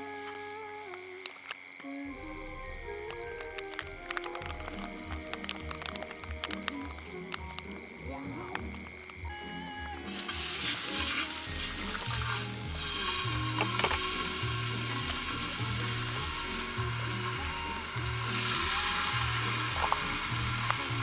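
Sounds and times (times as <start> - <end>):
background music with bass beat: 2.2 - 21.0
food sizzling in frying pan: 10.0 - 21.0.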